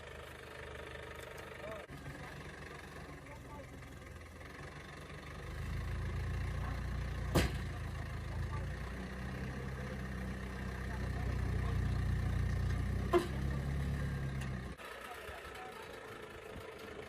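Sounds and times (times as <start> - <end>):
engine running steadily: 0.0 - 17.0
sharp knocks: 7.3 - 7.8.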